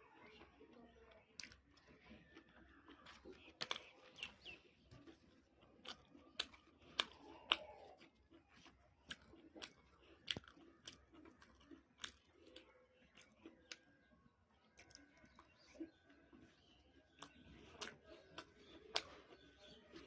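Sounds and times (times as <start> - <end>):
wet mouth clicks and smacks: 5.8 - 13.9.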